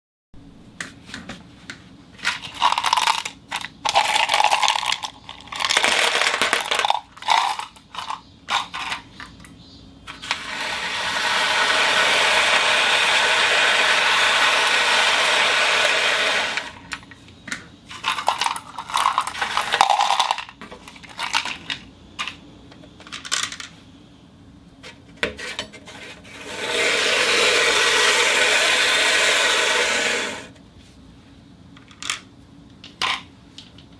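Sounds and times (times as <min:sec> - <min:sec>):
marbles clicking and knocking: 0:02.5 - 0:09.0
marbles rolling rush: 0:03.9 - 0:07.6, 0:10.2 - 0:17.0, 0:18.0 - 0:20.5, 0:26.3 - 0:30.5.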